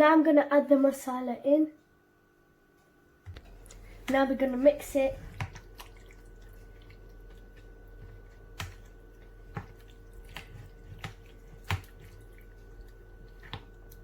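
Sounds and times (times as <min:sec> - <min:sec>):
faint steady hum: 0:00.0 - 0:14.0
wet squelches of stirring marinade: 0:03.3 - 0:14.0.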